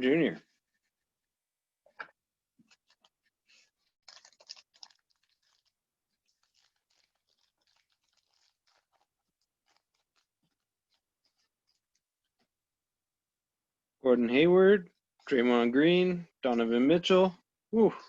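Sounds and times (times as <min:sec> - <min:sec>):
trading cards rustling and clicking: 0:02.6 - 0:12.0.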